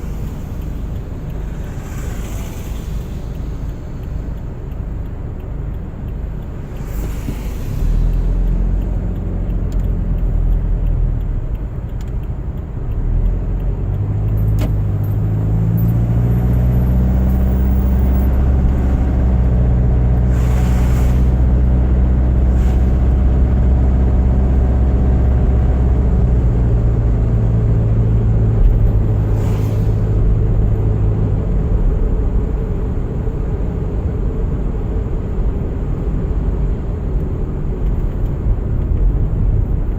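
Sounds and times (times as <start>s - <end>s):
brief hissing swells: 0.0s - 4.6s, 6.6s - 8.8s, 20.2s - 21.8s, 22.4s - 23.5s, 29.2s - 30.5s
car engine and tyre drone: 0.0s - 39.9s.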